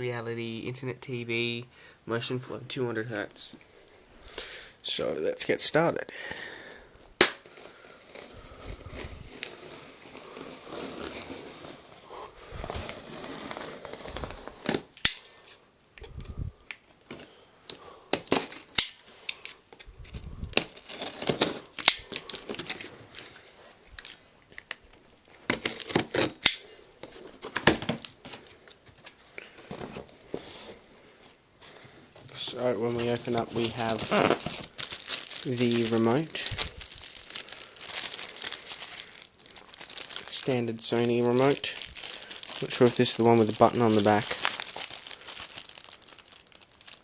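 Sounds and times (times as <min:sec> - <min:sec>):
packaging rustling and scraping: 0:07.4 - 0:15.1, 0:18.2 - 0:24.3, 0:25.3 - 0:47.0.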